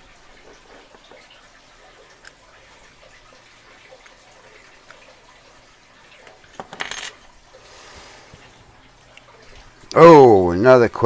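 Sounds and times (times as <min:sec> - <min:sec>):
metal padlocks clinking: 0:06.6 - 0:07.2.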